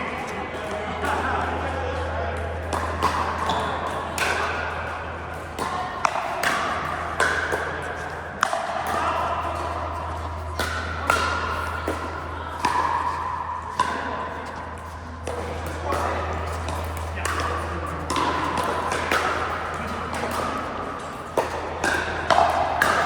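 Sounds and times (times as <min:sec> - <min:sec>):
paddles hitting plastic ball: 0:05.3 - 0:14.1.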